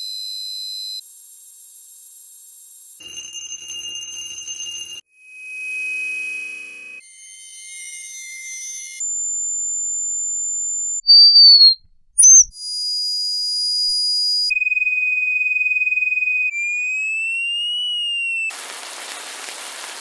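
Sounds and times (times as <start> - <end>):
high-pitched ringing whine: 0.0 - 12.5.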